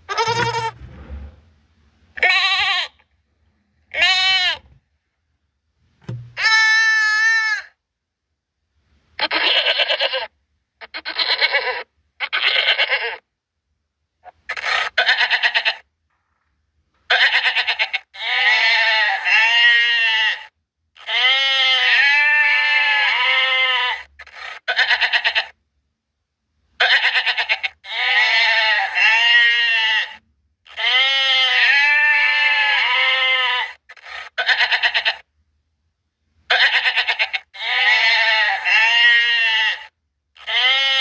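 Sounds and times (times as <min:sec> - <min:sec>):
goats bleating: 0:00.1 - 0:00.8, 0:02.2 - 0:03.0, 0:03.9 - 0:04.6, 0:06.4 - 0:07.7, 0:14.6 - 0:15.8, 0:17.1 - 0:25.6, 0:26.8 - 0:35.2, 0:36.5 - 0:41.0.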